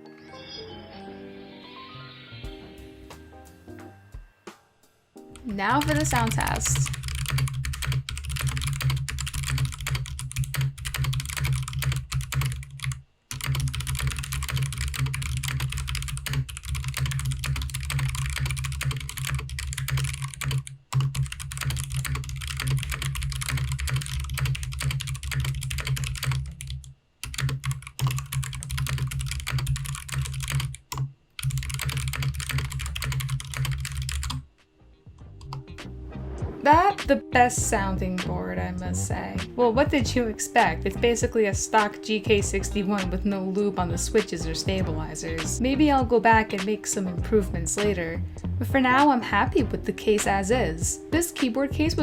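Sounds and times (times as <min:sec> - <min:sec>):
mechanical keyboard clacking: 0:05.4 - 0:34.4.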